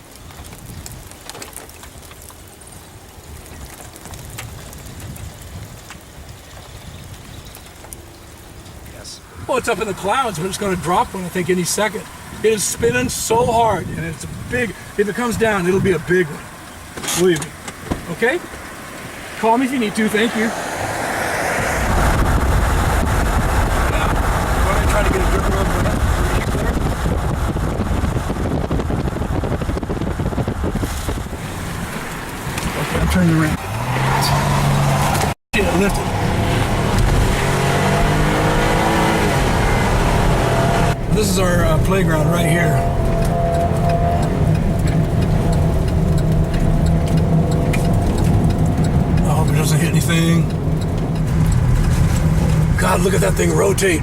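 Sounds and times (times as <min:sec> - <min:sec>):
rain pattering on a vehicle: 0:00.0 - 0:54.0
strong wind buffeting microphone: 0:02.7 - 0:54.0
low rumble: 0:20.5 - 0:54.0.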